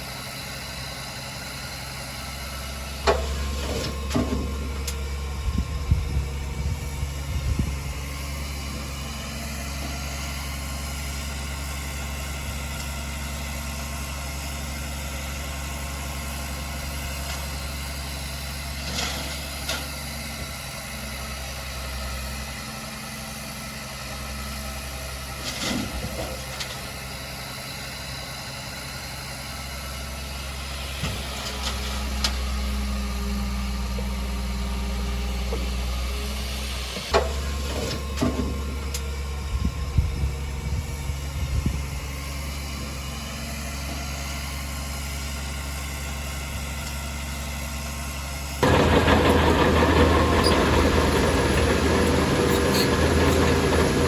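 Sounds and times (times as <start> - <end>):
diesel engine running at low revs: 0.0 - 54.0
clanks and knocks: 48.6 - 54.0.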